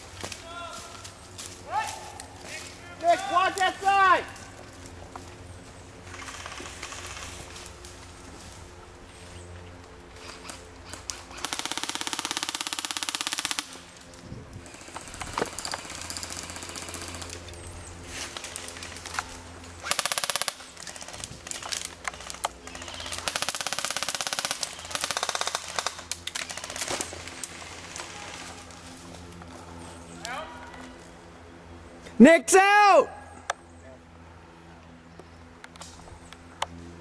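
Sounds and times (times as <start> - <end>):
airsoft guns firing bursts: 6.1 - 7.3, 10.2 - 13.9, 14.6 - 17.4, 19.8 - 28.4.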